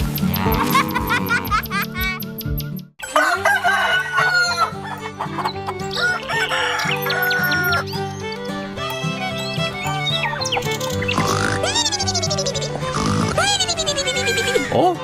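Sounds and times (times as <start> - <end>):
background music: 0.0 - 15.0
rooster crowing: 3.0 - 4.8, 6.0 - 7.8
chickens clucking: 4.2 - 7.9.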